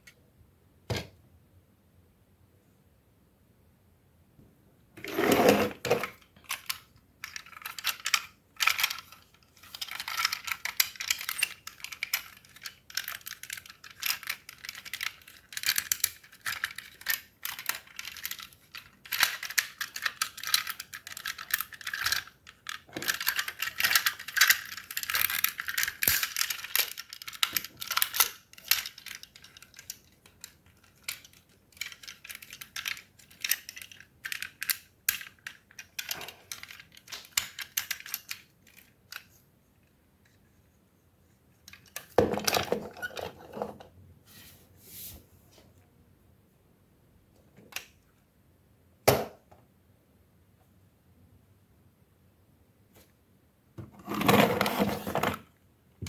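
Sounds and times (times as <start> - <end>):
plastic toy parts clicking: 6.0 - 39.4, 41.6 - 43.2.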